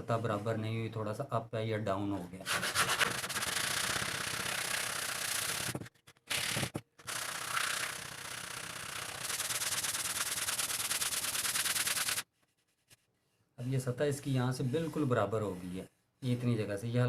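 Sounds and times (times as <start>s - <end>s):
sandpaper rubbing on wood: 2.5s - 5.7s, 6.3s - 13.0s.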